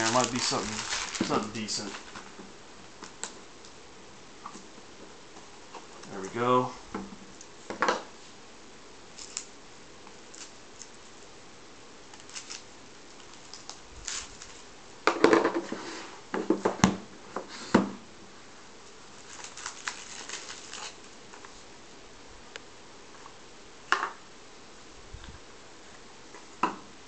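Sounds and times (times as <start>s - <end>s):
packaging clicks and rustles: 0.0s - 2.3s, 12.1s - 14.7s, 19.1s - 21.2s.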